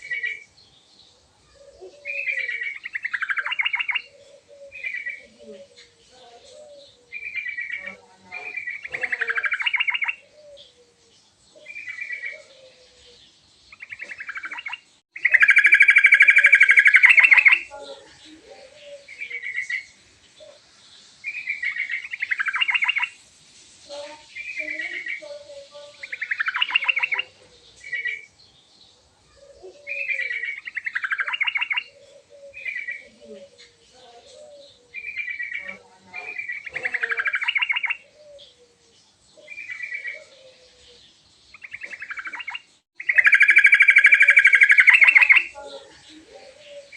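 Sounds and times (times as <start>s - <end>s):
bulbul singing chattering phrases: 0.0s - 0.6s, 1.4s - 23.2s, 23.8s - 28.4s, 29.2s - 46.9s
rapid bird trill: 13.7s - 17.8s, 21.3s - 23.2s, 25.9s - 28.3s, 29.8s - 33.1s, 34.9s - 38.5s, 41.5s - 46.0s.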